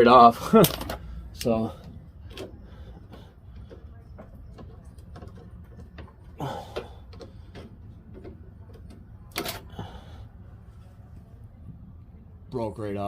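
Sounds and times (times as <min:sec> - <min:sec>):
low steady hum: 0:00.0 - 0:13.0
tools clicking and knocking: 0:02.2 - 0:09.7.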